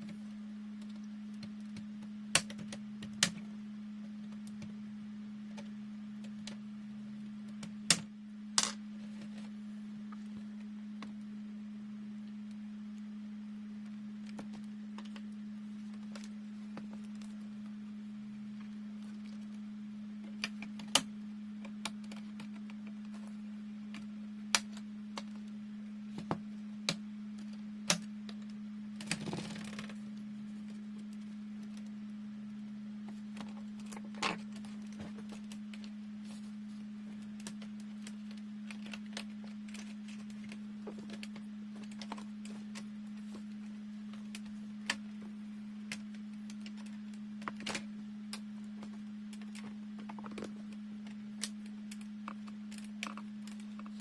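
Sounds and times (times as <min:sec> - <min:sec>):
steady low hum: 0:00.0 - 0:54.0.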